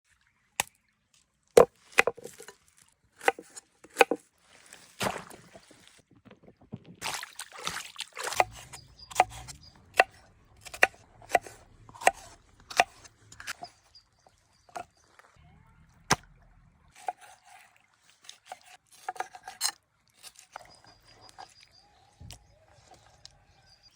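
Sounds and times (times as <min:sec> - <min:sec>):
knife chopping on wooden board: 0:01.6 - 0:02.5, 0:03.2 - 0:04.2, 0:08.2 - 0:13.7, 0:19.0 - 0:19.6.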